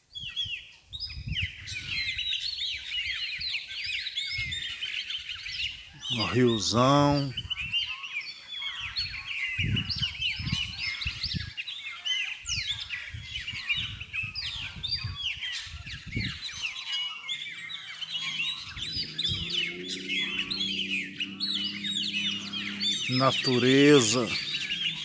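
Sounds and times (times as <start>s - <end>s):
many birds chirping: 4.5s - 7.5s, 13.8s - 25.0s.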